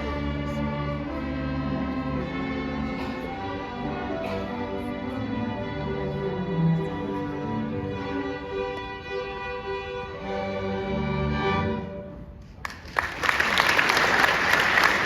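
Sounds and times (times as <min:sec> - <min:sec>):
string orchestra playing chords: 0:00.0 - 0:12.5
audience applause: 0:12.6 - 0:15.0.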